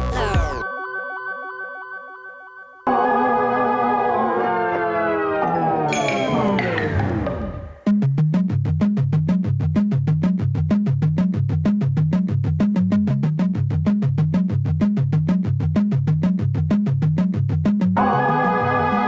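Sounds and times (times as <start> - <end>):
pulsing synthesizer bass line: 2.9 - 7.9.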